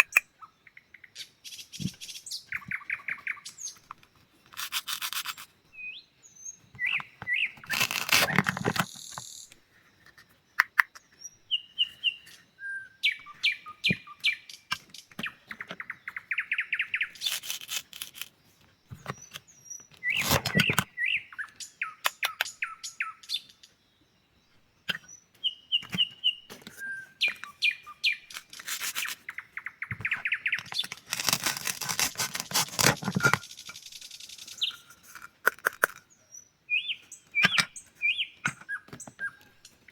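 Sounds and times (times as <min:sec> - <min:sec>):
small bird chirping and trilling: 0:00.0 - 0:03.9, 0:04.5 - 0:09.5, 0:11.0 - 0:18.3, 0:19.0 - 0:23.8, 0:24.9 - 0:39.9
loud rasping noise bursts: 0:30.9 - 0:33.2.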